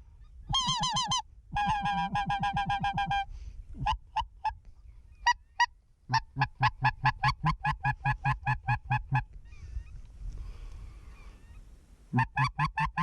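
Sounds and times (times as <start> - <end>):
goose honking: 0.5 - 4.0, 12.1 - 13.0.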